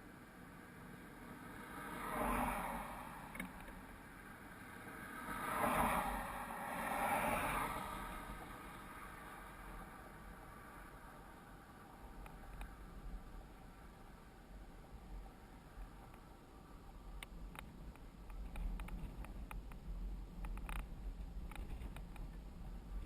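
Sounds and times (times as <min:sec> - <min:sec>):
low steady rumble: 0:00.0 - 0:23.0
vehicles whooshing past: 0:00.4 - 0:12.2.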